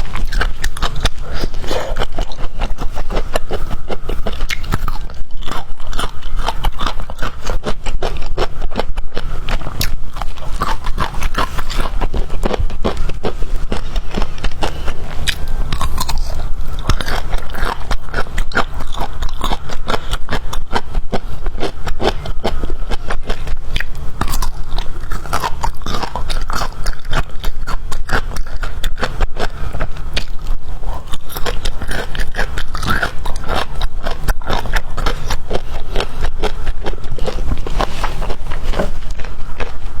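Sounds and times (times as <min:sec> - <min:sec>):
chewing crunches: 0:00.0 - 0:40.0.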